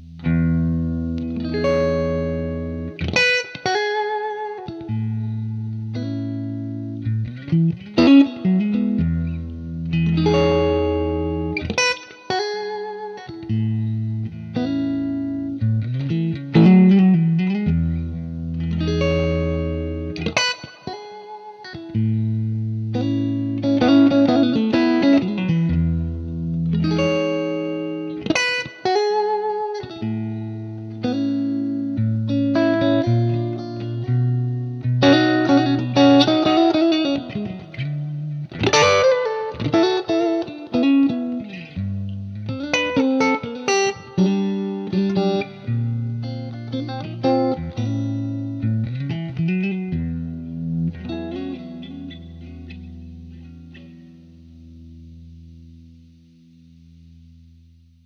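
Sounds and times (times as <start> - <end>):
electric guitar: 0.0 - 58.0.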